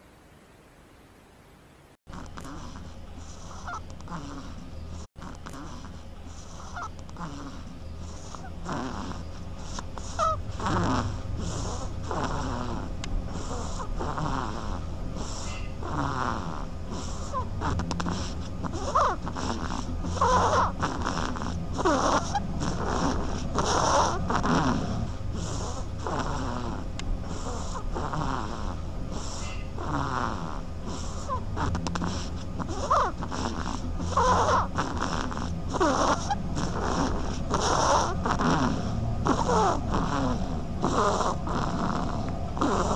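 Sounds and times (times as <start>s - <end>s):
duckling snoring: 2.1s - 42.9s.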